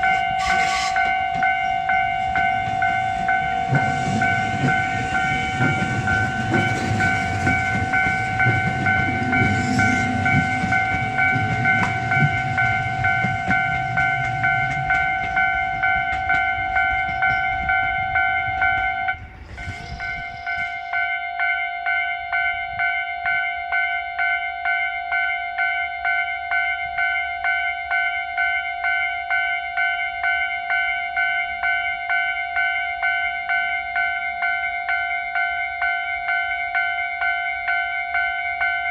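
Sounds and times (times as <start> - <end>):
train rumble: 0.0 - 21.1
level-crossing alarm ringing: 0.0 - 38.9.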